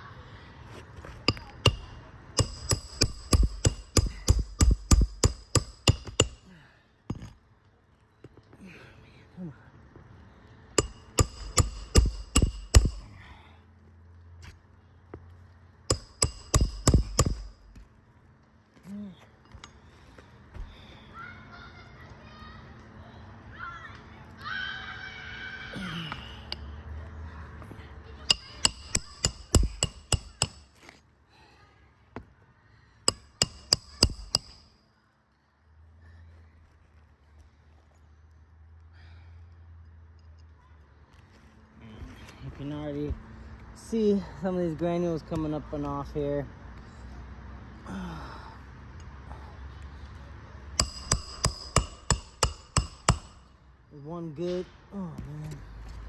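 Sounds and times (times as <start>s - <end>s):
hammer striking nails on roof: 1.3s - 6.4s, 10.8s - 13.1s, 15.9s - 17.8s, 28.3s - 30.7s, 33.1s - 34.6s, 50.8s - 53.5s
hammer striking roof shingles: 28.3s - 30.6s.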